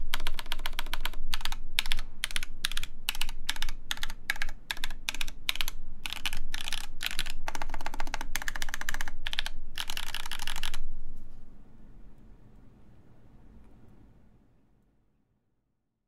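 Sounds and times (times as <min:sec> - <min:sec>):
typing on mechanical keyboard: 0:00.0 - 0:10.8.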